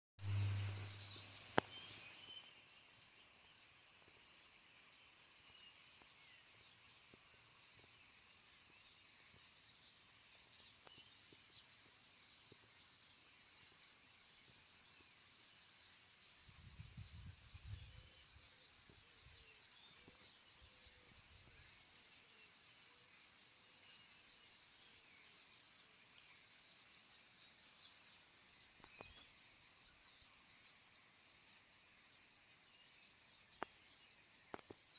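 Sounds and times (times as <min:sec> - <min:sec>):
birds chirping and singing: 0:00.2 - 0:03.5, 0:12.2 - 0:34.9.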